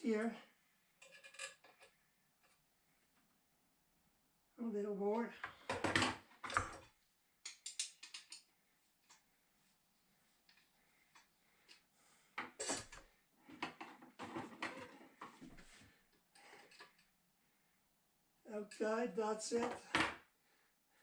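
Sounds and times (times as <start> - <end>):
hand tools clicking on metal: 7.5 - 8.4.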